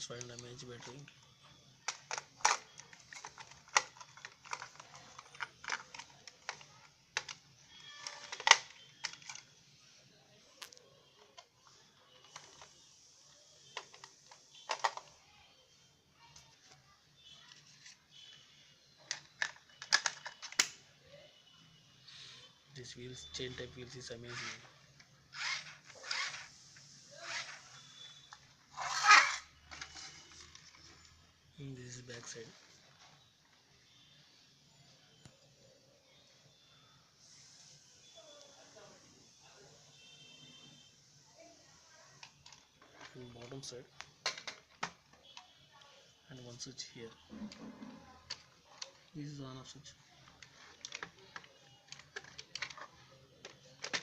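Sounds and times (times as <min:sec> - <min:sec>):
toy truck rasping scrapes: 0:24.3 - 0:24.7, 0:25.3 - 0:30.3.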